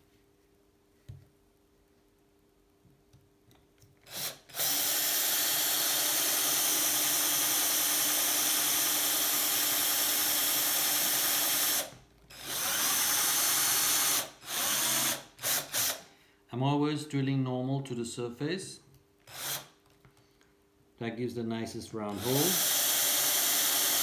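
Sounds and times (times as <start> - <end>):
electric drill whining: 4.1 - 16.0, 19.3 - 19.7, 22.1 - 24.0.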